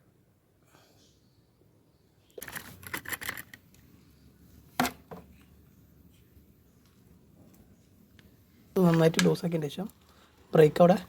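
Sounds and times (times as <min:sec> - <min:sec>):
rustling and clicking handling: 0:02.4 - 0:03.9.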